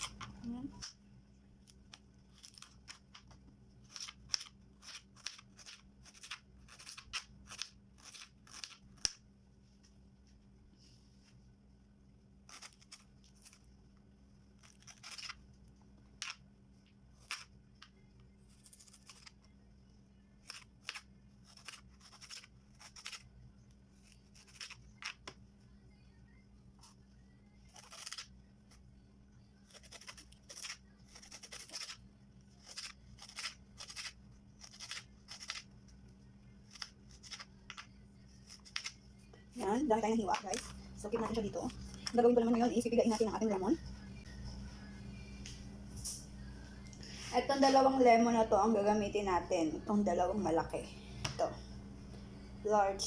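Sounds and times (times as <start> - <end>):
knife slicing ginger: 29.7 - 32.0.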